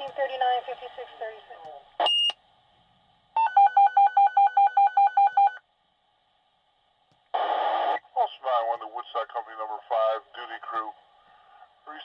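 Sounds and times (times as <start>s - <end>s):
pager electronic beeps: 3.4s - 5.6s
radio static hiss: 7.3s - 11.0s, 11.6s - 12.0s.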